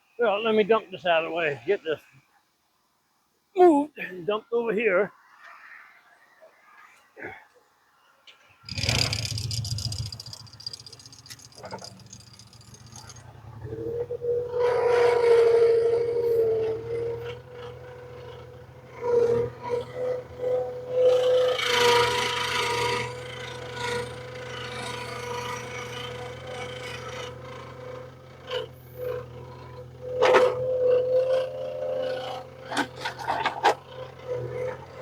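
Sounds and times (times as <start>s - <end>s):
sharp knocks and clatters: 8.7s - 13.2s
wood scraping and rubbing: 8.7s - 13.2s
engine whining: 8.7s - 35.0s.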